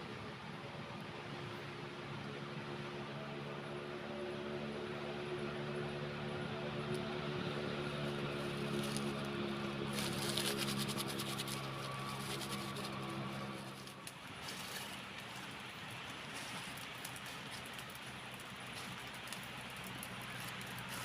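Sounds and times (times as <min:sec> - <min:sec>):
steady motor hum: 0:00.0 - 0:21.0
crackly scratching noise: 0:08.3 - 0:21.0.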